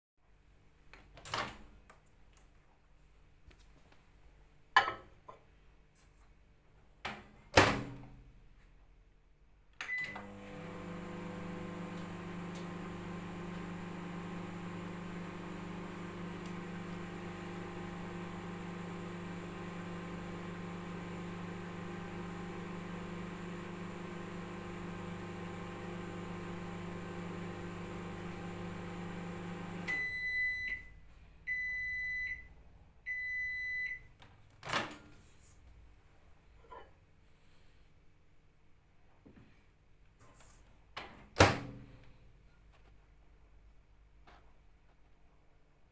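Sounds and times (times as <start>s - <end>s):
microwave oven humming: 9.9s - 32.5s.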